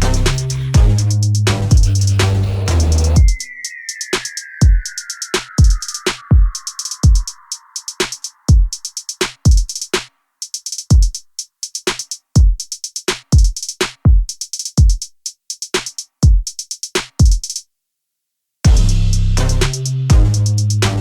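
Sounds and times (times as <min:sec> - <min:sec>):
electronic music with drum-machine beat: 0:00.0 - 0:17.5, 0:18.7 - 0:21.0.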